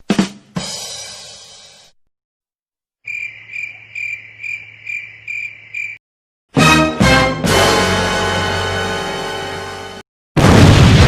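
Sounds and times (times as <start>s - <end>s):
cricket chirping: 3.0s - 6.0s.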